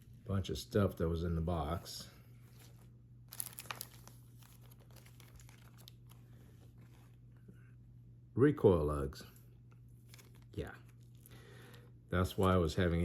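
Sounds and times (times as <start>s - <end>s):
packaging crinkling: 2.4s - 6.9s, 9.8s - 11.8s.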